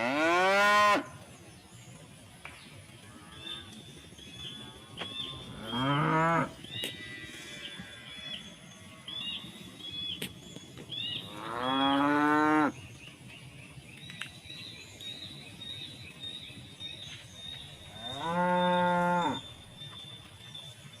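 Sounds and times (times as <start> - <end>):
cows mooing: 0.0 - 1.1, 4.7 - 8.3, 11.3 - 12.7, 17.9 - 19.5.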